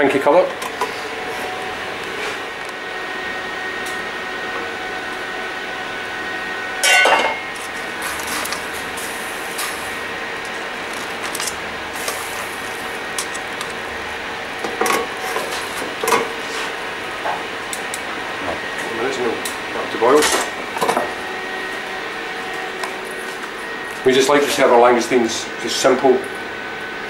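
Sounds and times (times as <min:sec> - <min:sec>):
kitchen hum: 0:00.0 - 0:27.0
metal cookware clattering: 0:06.8 - 0:07.4.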